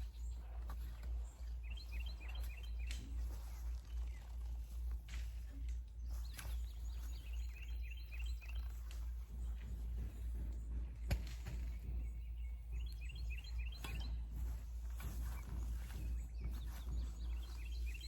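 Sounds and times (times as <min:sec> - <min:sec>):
songbird chirping: 0:00.0 - 0:18.0
sharp knocks: 0:09.4 - 0:12.8.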